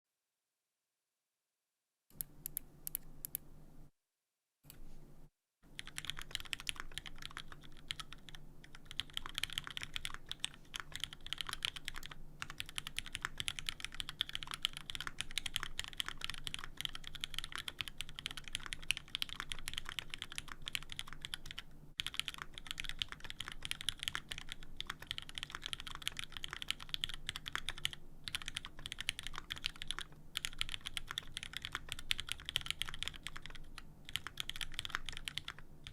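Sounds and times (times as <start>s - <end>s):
fast typing on mechanical keyboard: 5.7s - 35.9s.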